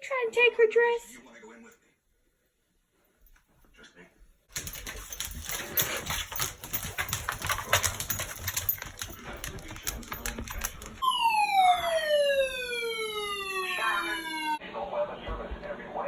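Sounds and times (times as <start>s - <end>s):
siren-like tone sliding down: 11.0s - 14.6s.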